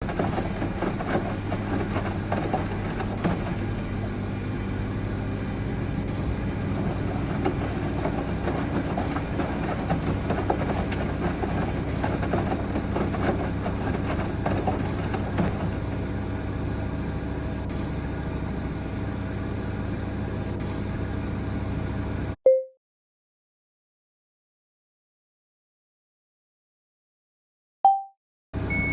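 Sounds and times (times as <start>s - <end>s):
machine humming and rattling: 0.0s - 22.2s.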